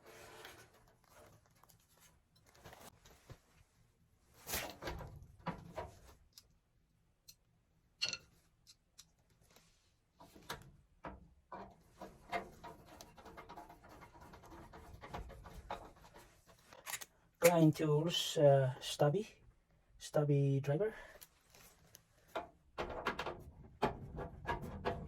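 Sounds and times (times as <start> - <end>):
clicks and rattles of tools: 8.0 - 9.2, 10.2 - 17.7.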